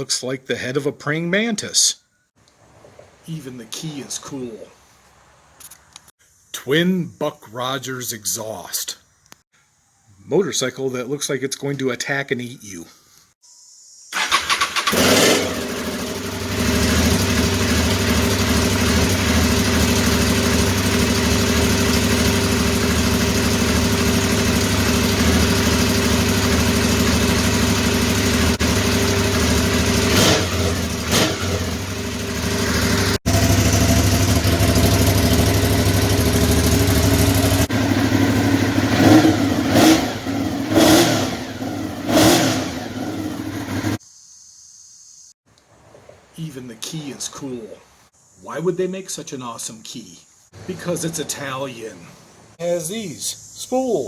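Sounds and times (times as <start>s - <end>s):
motorcycle engine idling and revving: 14.2s - 44.0s.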